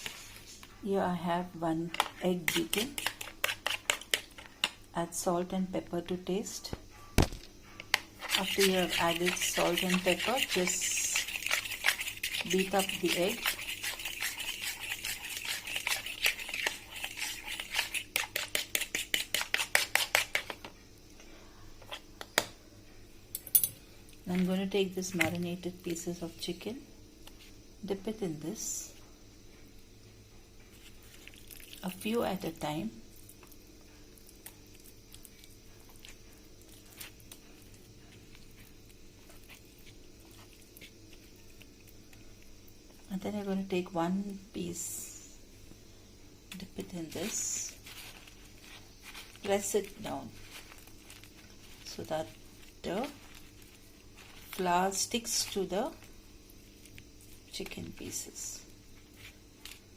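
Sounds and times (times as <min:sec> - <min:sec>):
low steady hum: 0:00.0 - 0:59.9
egg beaten in a bowl: 0:02.0 - 0:04.5, 0:08.2 - 0:20.6
wet squishing: 0:08.2 - 0:20.4, 0:31.0 - 0:31.9.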